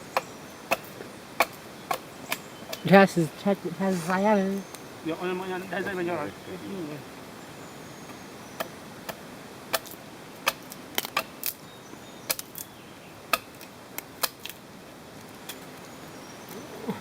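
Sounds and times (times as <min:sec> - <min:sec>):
wood fire crackling: 0:00.7 - 0:07.5.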